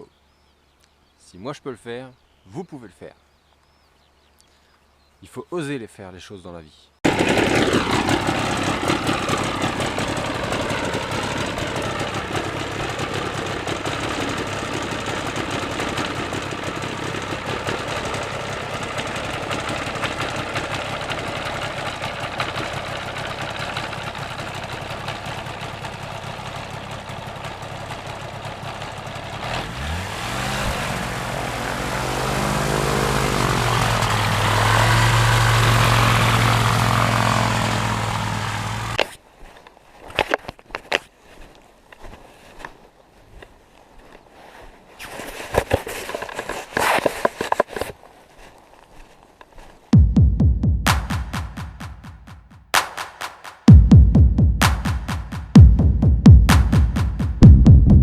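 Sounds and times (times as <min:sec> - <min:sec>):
paramotor engine and propeller: 0:07.1 - 0:39.0.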